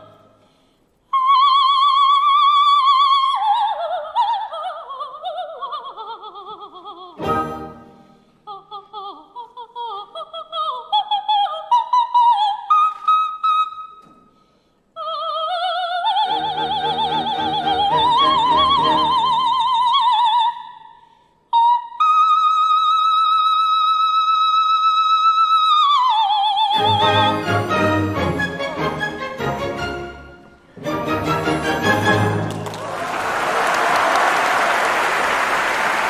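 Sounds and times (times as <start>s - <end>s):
soprano singing opera: 1.1s - 7.9s, 8.5s - 13.9s, 15.0s - 20.9s, 21.5s - 29.6s
orchestral accompaniment: 7.2s - 8.2s, 16.3s - 19.6s, 26.8s - 32.8s.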